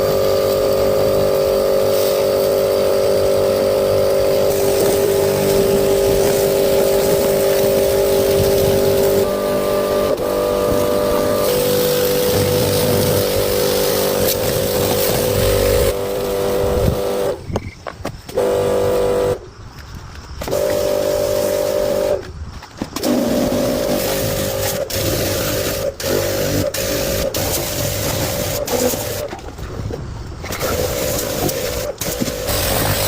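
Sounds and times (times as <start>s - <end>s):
car engine humming: 0.0s - 17.4s.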